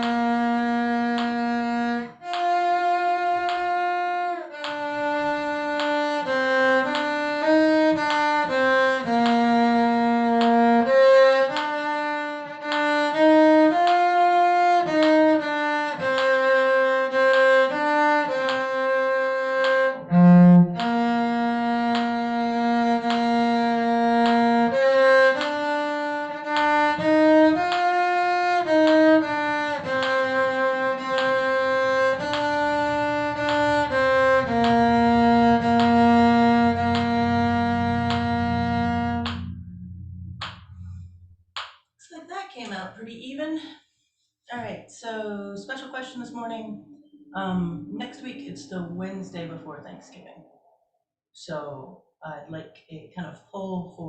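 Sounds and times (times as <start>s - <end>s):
solo violin melody: 0.0s - 41.0s.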